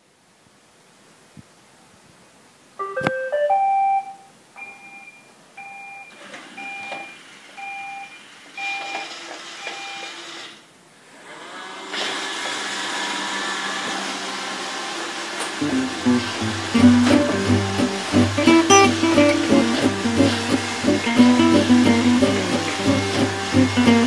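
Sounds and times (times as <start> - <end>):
short beeps: 2.8 - 9.0
vacuum motor and brushes running: 11.2 - 24.0.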